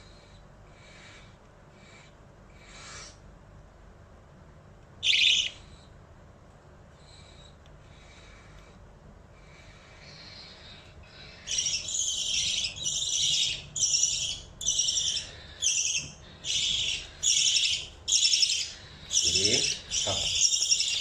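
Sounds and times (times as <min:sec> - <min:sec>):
bird chick harsh raspy calls: 0:00.8 - 0:03.2, 0:05.0 - 0:05.8, 0:09.5 - 0:21.0.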